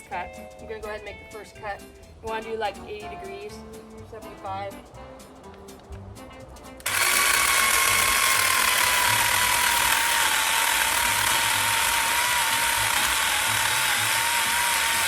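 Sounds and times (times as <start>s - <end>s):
chainsaw cutting wood: 6.8s - 15.0s.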